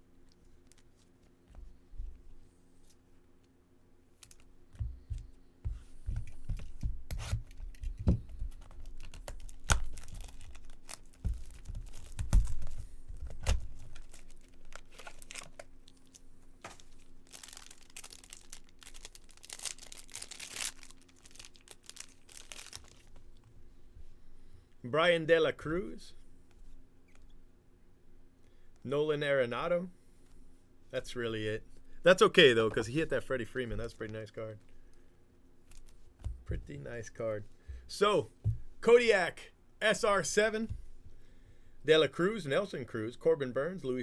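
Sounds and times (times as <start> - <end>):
taps and knocks of cards: 4.2 - 14.0, 35.7 - 36.7
foil wrappers tearing and crinkling: 8.4 - 23.3.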